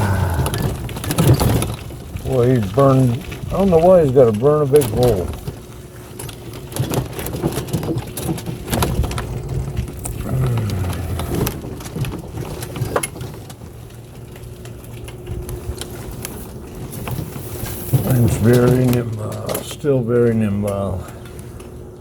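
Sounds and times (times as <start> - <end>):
faint steady hum: 0.0 - 22.0
trike rattling over road: 0.0 - 22.0.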